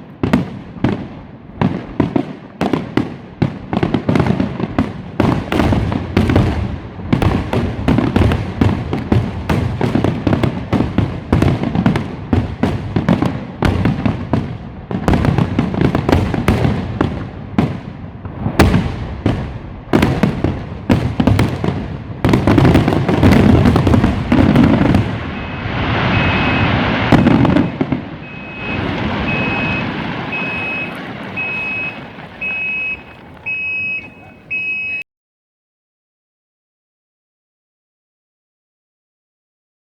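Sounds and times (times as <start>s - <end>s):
fireworks bangs and cracks: 0.0s - 35.0s
high electronic beep: 25.4s - 27.4s, 28.2s - 35.0s.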